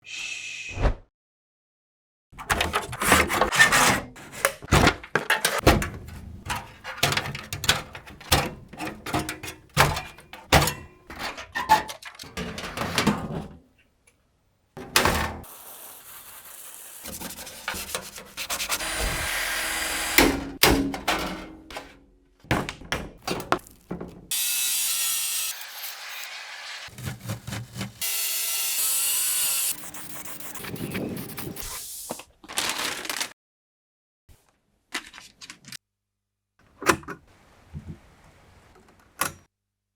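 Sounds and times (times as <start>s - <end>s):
parts knocking and clunking: 4.5s - 13.7s, 20.2s - 24.3s
power tool or sanding noise: 15.4s - 20.3s, 24.3s - 32.1s.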